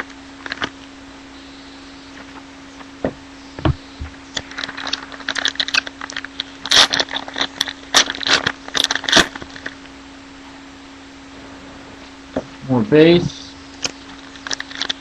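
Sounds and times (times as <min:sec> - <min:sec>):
steady low hum: 0:00.0 - 0:15.0
wrappers crinkling and tearing: 0:00.4 - 0:00.8, 0:04.3 - 0:09.8, 0:13.8 - 0:15.0.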